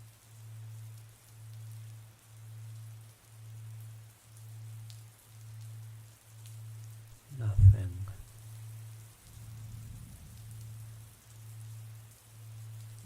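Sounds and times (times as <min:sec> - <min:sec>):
soft rain falling: 0:00.0 - 0:13.0
pulsing low hum: 0:07.3 - 0:08.3.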